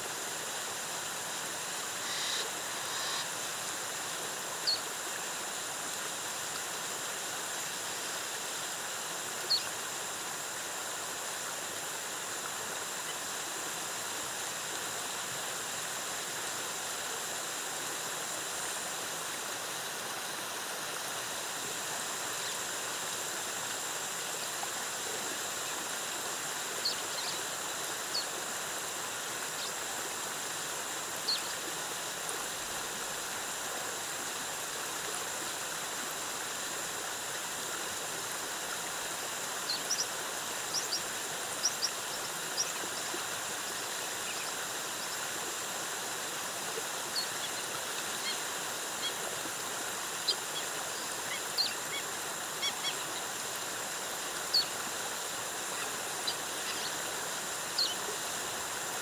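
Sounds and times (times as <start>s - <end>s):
waterfall rushing: 38.3s - 59.0s.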